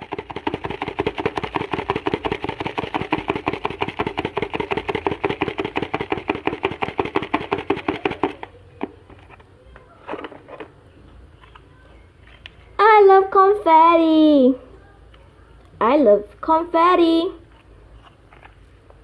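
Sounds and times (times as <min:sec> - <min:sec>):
plastic toy pack rattling: 0:00.0 - 0:09.4
faint handling sounds: 0:08.4 - 0:12.8, 0:17.4 - 0:19.0.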